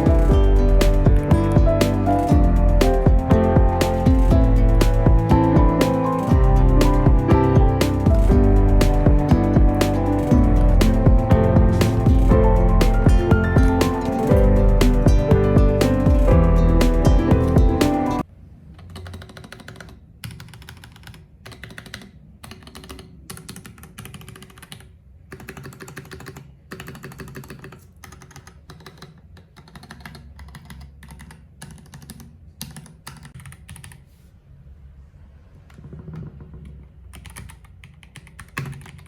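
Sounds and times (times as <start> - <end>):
background music with steady beat: 0.0 - 18.3
mechanical keyboard typing: 18.8 - 34.1, 36.0 - 39.0.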